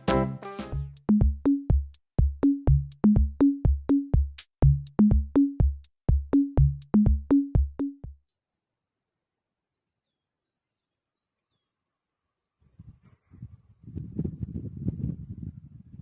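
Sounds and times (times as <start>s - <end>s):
electronic drum machine beat: 0.0s - 8.2s.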